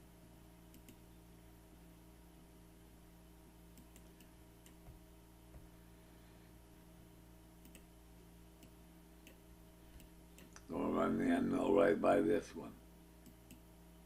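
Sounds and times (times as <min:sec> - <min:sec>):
low electrical hum: 0:00.0 - 0:14.0
computer mouse clicks: 0:00.7 - 0:01.0, 0:03.7 - 0:05.0, 0:07.6 - 0:07.9, 0:13.2 - 0:13.7.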